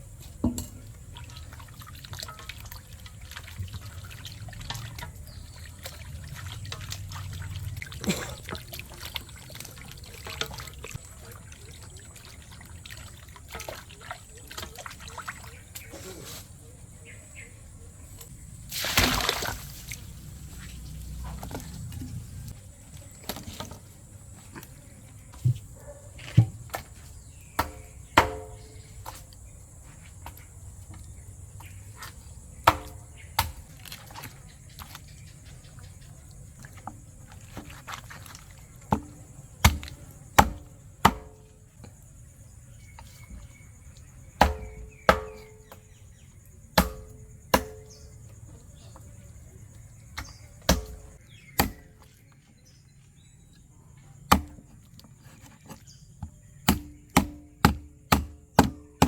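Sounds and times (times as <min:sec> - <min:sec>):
insects buzzing: 0:15.4 - 0:59.0
knife chopping on wooden board: 0:27.6 - 0:28.7, 0:44.4 - 0:45.6, 0:50.7 - 0:51.9, 0:54.3 - 0:54.7, 0:56.3 - 0:59.0.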